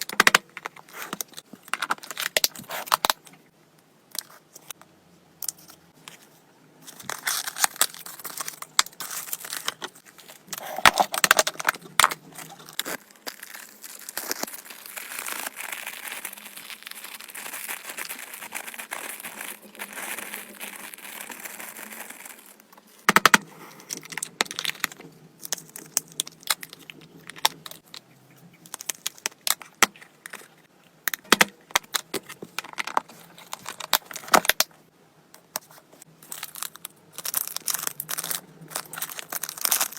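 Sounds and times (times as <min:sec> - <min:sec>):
packaging crinkling and tearing: 0:06.9 - 0:22.9, 0:36.2 - 0:39.9.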